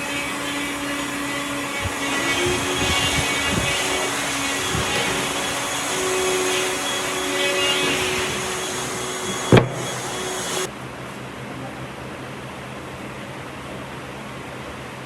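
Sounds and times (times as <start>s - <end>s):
woodworking machine whirring: 0.0s - 10.7s.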